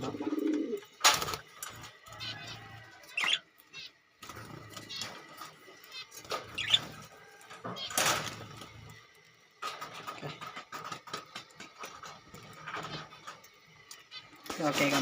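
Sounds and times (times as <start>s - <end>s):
budgies chirping: 2.1s - 7.0s
cage rattle: 4.2s - 8.7s, 9.5s - 15.0s.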